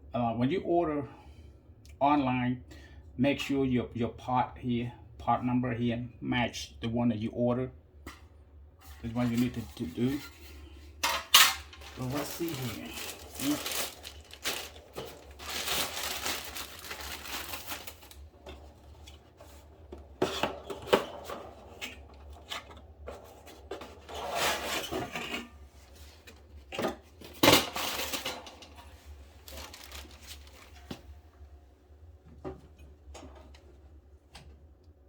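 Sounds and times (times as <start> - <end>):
steady low hum: 0.0 - 35.0
packaging rustling: 11.6 - 19.2, 29.1 - 31.0.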